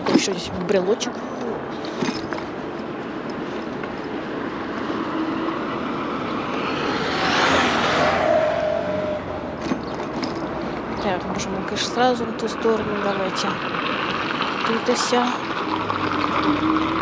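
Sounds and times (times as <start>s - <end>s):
road and wind noise: 0.0s - 17.0s
car passing by: 4.7s - 9.6s, 13.0s - 17.0s.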